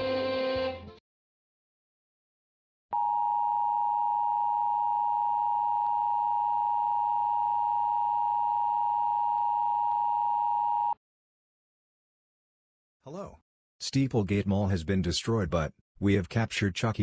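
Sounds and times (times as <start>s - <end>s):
two-tone electronic alert tone: 3.0s - 11.0s.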